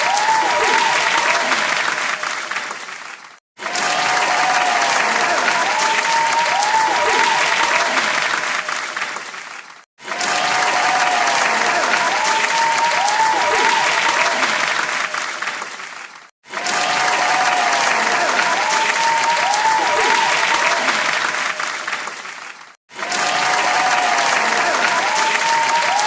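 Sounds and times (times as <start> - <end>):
crowd clapping: 0.0 - 26.0.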